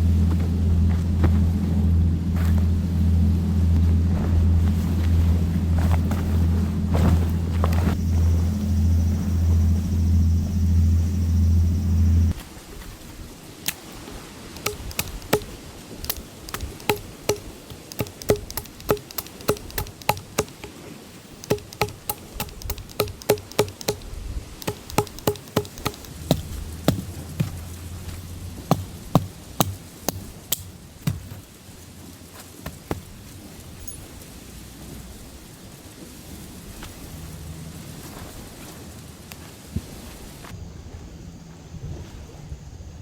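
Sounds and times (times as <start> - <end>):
sharp ringing knocks: 14.6 - 20.8, 21.4 - 27.6, 28.7 - 31.4.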